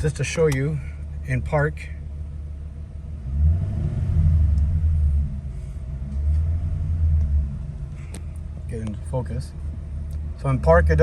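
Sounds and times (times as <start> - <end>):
car engine revving: 1.4 - 11.0.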